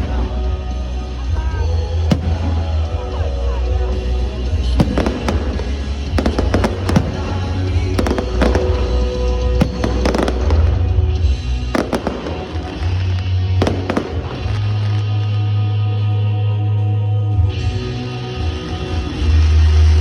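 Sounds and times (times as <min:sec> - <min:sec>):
music playing: 0:00.0 - 0:20.0
fireworks bangs and crackle: 0:02.0 - 0:15.6
deep booms: 0:02.1 - 0:03.0, 0:04.6 - 0:15.0.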